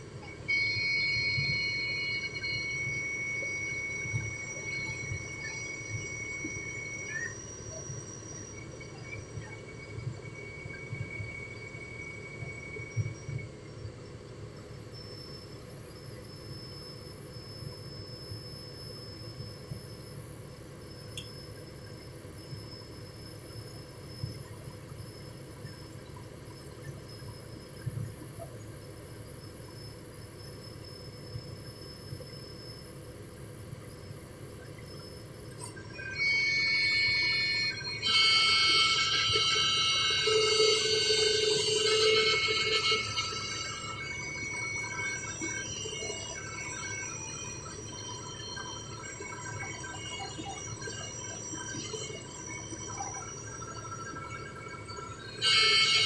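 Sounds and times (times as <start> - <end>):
thin high-pitched tones: 35.6 - 47.1
excavator diesel engine running: 36.2 - 46.2.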